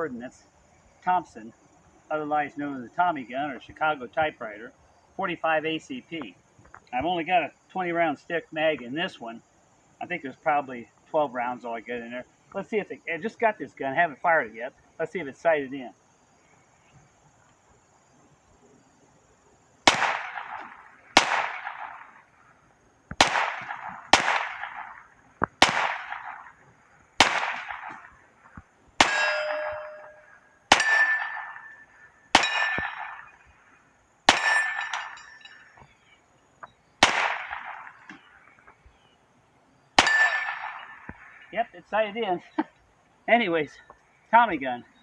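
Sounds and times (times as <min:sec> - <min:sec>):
gunshots with echo: 0:19.9 - 0:22.3, 0:23.2 - 0:26.6, 0:27.2 - 0:28.2, 0:29.0 - 0:33.5, 0:34.3 - 0:35.5, 0:37.0 - 0:38.2, 0:40.0 - 0:41.4.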